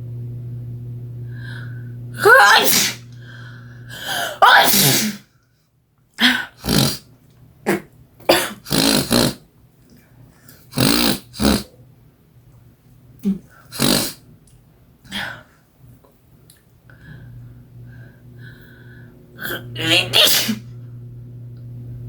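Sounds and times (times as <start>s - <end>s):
woman sneezing: 2.2s - 3.0s, 4.1s - 5.3s, 19.4s - 20.7s.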